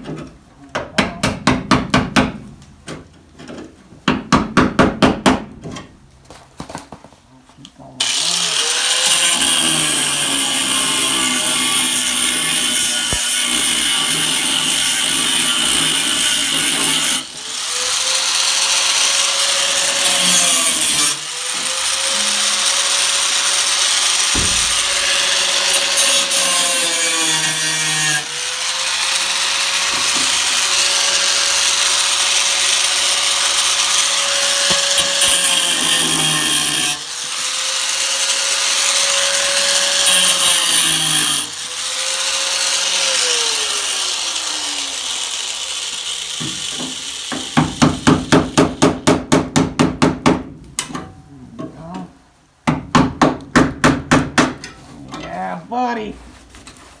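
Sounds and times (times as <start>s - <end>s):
electric grinder whining on sheet metal: 8.0s - 47.8s.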